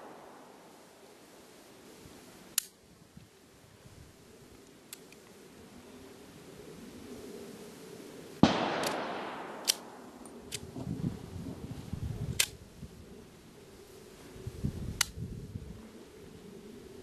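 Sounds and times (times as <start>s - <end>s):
sharp clicks: 2.5s - 2.8s, 8.7s - 9.9s, 12.4s - 12.6s
pistol shot with echo: 8.4s - 10.1s.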